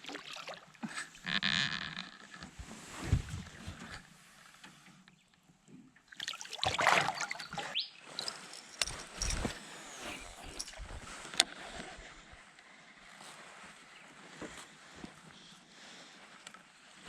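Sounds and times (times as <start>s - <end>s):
knocks and handling in a boat: 0.8s - 6.0s
splashing or rustling: 6.1s - 9.5s.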